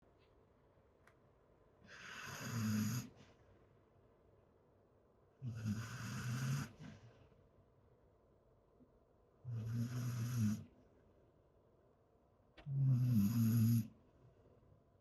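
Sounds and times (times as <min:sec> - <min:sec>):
dog snoring: 0:01.9 - 0:03.2, 0:05.4 - 0:07.0, 0:09.4 - 0:10.8, 0:12.6 - 0:14.0.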